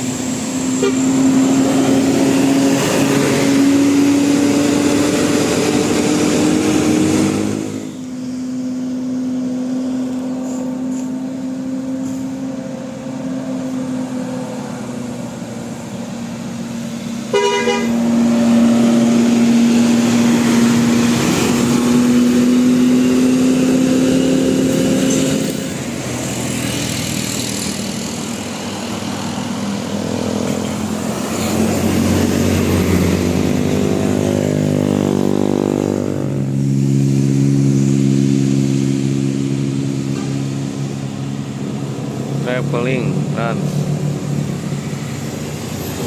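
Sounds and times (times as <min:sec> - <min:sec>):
engine noise: 0:00.0 - 0:46.0
bus and truck horns: 0:00.6 - 0:03.4, 0:04.2 - 0:08.2, 0:17.1 - 0:18.8, 0:40.0 - 0:40.7.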